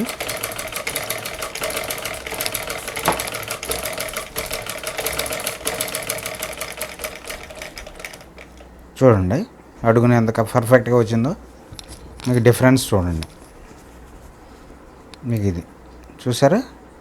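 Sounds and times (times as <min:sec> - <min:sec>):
sewing machine clattering: 0:00.0 - 0:08.8.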